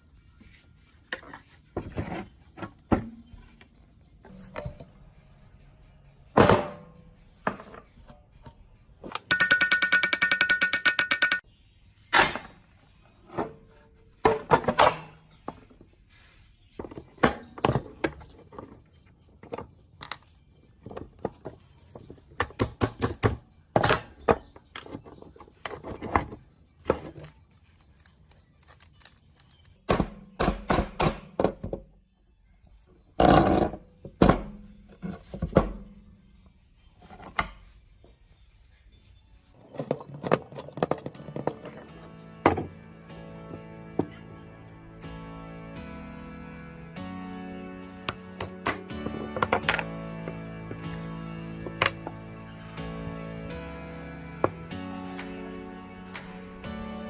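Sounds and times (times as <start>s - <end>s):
metal parts knocking and clattering: 9.1s - 11.4s, 16.8s - 31.9s, 39.5s - 42.8s.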